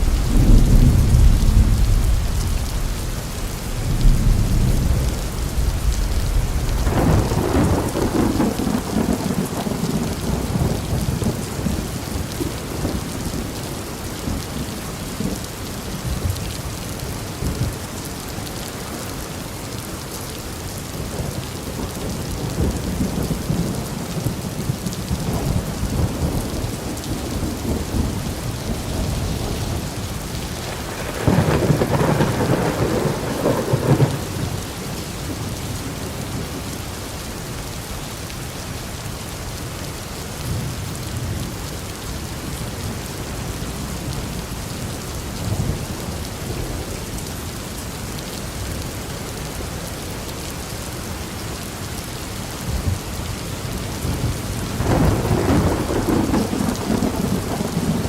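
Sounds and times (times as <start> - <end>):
rolling thunder: 0.0 - 13.6, 21.2 - 36.2, 54.0 - 58.0
heavy rain: 0.0 - 58.0.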